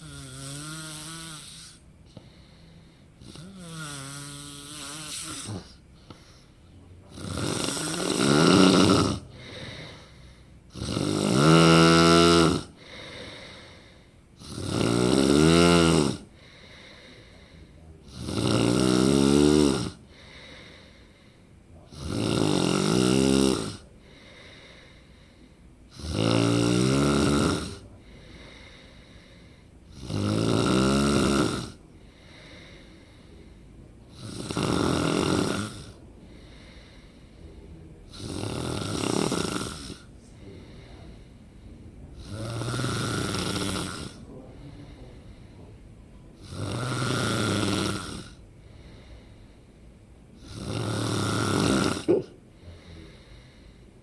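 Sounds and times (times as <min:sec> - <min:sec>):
person snoring loudly: 0:00.0 - 0:01.8, 0:03.2 - 0:05.8, 0:07.1 - 0:10.1, 0:10.7 - 0:12.7, 0:14.4 - 0:16.3, 0:18.1 - 0:20.0, 0:21.9 - 0:24.4, 0:25.9 - 0:27.8, 0:29.9 - 0:32.6, 0:34.1 - 0:36.0, 0:38.1 - 0:40.1, 0:42.2 - 0:44.2, 0:46.4 - 0:48.4, 0:50.4 - 0:52.3
quiet breathing: 0:00.0 - 0:11.2, 0:12.2 - 0:54.0.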